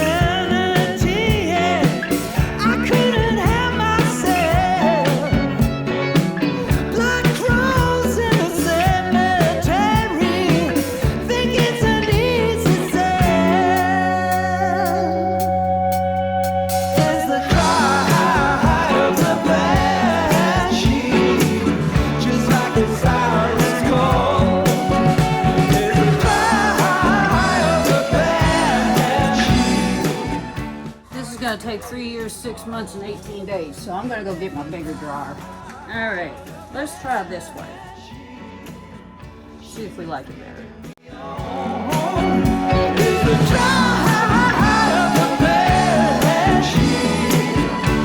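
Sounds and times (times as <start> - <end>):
steady drum beat: 0.0 - 13.9, 16.7 - 31.0, 41.2 - 48.0
song with sung vocal: 0.0 - 48.0.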